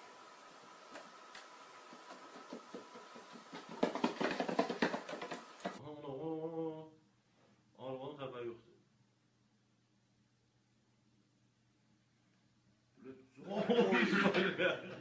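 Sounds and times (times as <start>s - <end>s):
faint hiss: 0.0s - 9.6s
flurry of knocks and taps: 0.9s - 5.8s.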